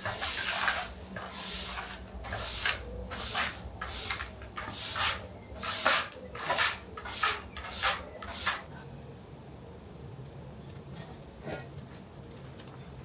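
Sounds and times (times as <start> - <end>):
spray bottle spritzing: 0.0 - 8.6.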